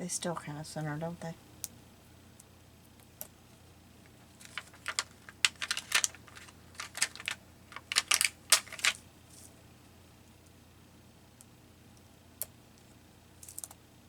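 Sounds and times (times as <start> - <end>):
paper pieces clicking and tapping: 4.4 - 9.5.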